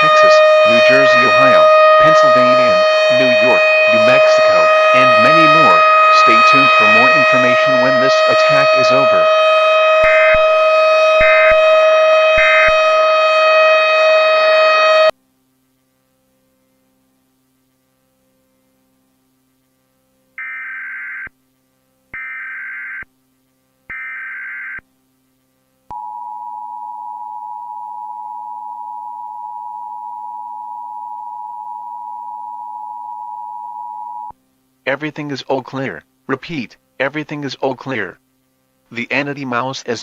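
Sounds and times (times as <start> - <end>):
screeching data header bursts: 0.0 - 9.3
loud alarm tone: 0.0 - 15.1, 20.4 - 21.3, 22.2 - 23.1, 23.9 - 24.8, 25.9 - 34.4
two-tone attention signal: 25.9 - 34.3.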